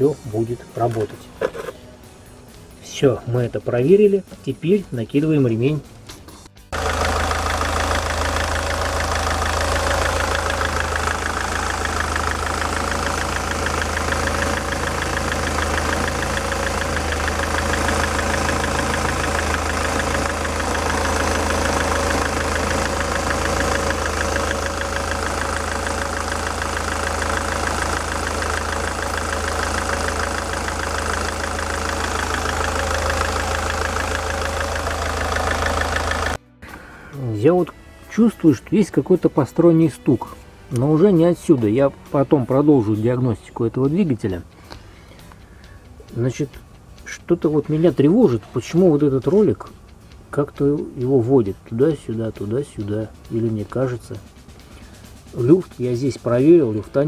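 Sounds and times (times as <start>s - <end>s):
diesel engine idling: 6.6s - 37.1s, 51.0s - 56.5s
faint engine knock: 6.8s - 36.4s.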